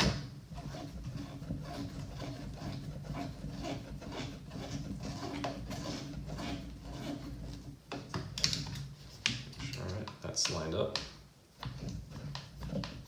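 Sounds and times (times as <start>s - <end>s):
screw scraping into plastic: 11.6s - 13.0s.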